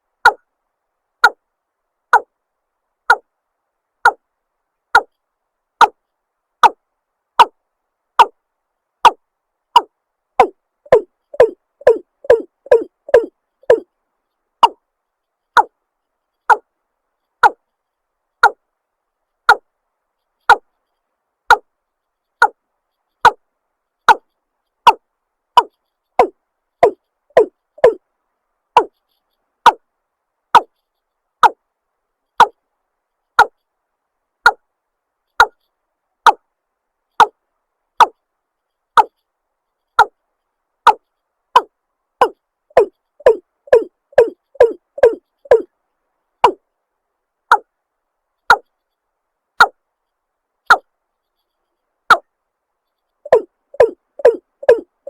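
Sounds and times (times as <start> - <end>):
watercock calling: 10.4 - 13.8.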